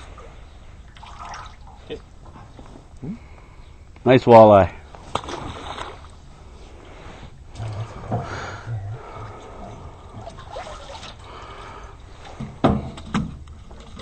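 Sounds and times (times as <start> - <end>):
water dripping and sloshing: 0.0 - 2.4, 5.0 - 8.4, 9.0 - 14.0.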